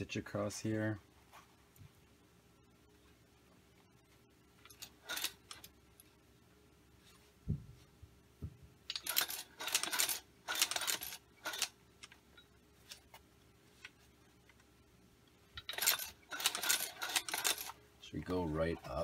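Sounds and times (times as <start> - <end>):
sewing machine metallic clatter: 4.6 - 5.7, 8.9 - 11.7, 15.6 - 17.8.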